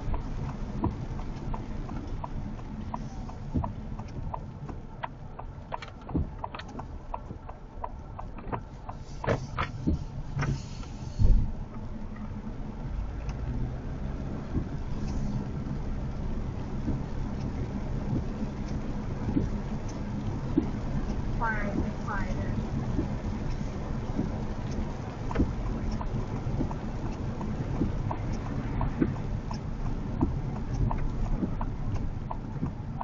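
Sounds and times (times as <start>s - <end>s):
low road rumble: 0.0s - 33.0s
sharp ticks: 0.1s - 9.0s, 14.5s - 33.0s
heavy thump: 11.2s - 11.6s.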